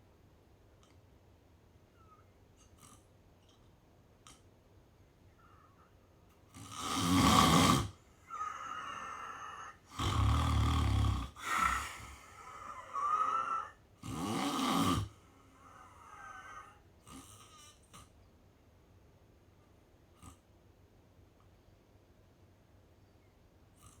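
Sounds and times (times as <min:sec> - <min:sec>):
quiet breathing: 0:05.3 - 0:18.2, 0:22.9 - 0:24.0
person snoring: 0:06.6 - 0:17.6.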